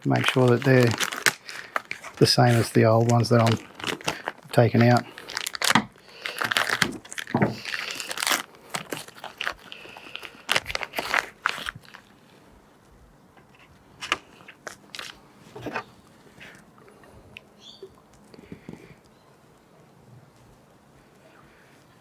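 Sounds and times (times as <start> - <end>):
plastic packaging crinkling and tearing: 0.0 - 12.2, 14.0 - 16.6.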